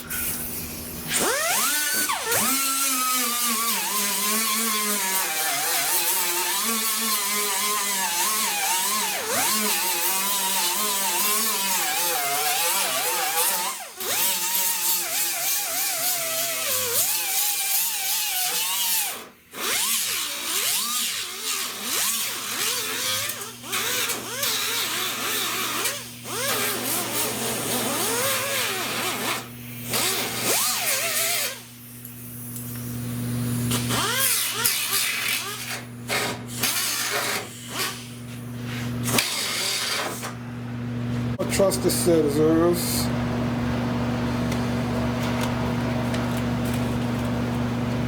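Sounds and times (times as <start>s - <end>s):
power tool cutting sheet metal: 0.0s - 31.7s, 33.7s - 40.4s.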